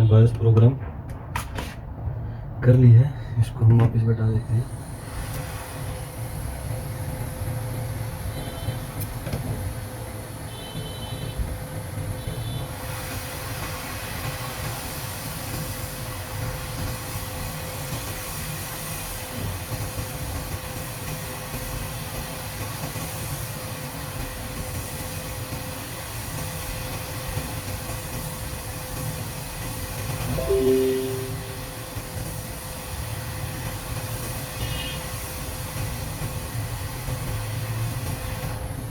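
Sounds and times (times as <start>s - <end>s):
hot air blower hiss: 4.6s - 10.5s, 12.8s - 29.8s.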